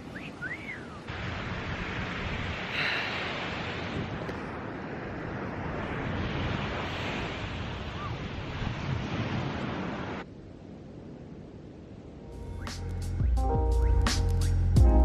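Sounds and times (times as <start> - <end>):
wind buffeting microphone: 0.0 - 11.6
surf washing on beach: 0.0 - 12.2.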